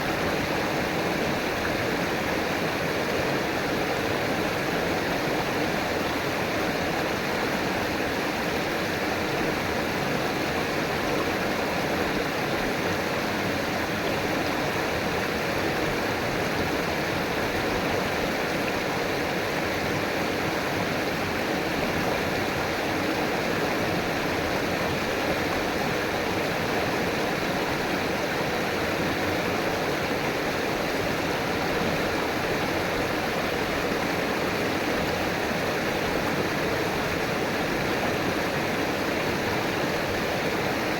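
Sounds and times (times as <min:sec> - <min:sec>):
river water rushing: 0:00.0 - 0:40.9.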